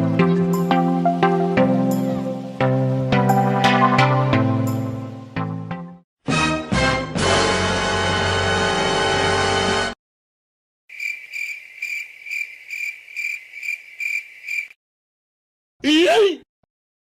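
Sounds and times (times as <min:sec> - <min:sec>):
cricket chirping: 0:10.9 - 0:14.8.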